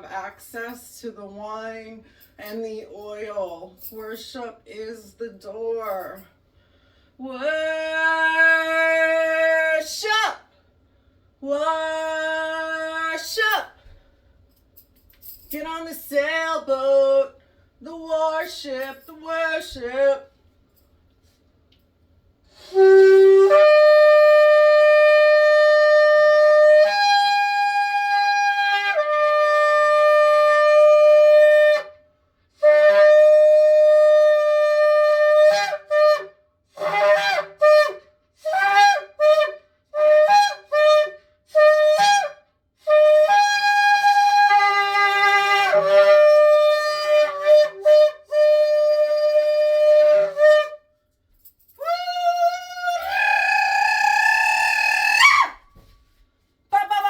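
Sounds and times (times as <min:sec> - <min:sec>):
shofar blasts: 0:22.5 - 0:32.0, 0:32.6 - 0:50.9, 0:51.7 - 0:55.7.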